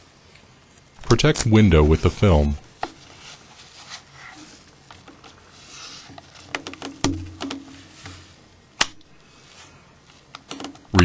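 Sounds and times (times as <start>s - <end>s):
hands rubbing phone: 1.9s - 8.4s.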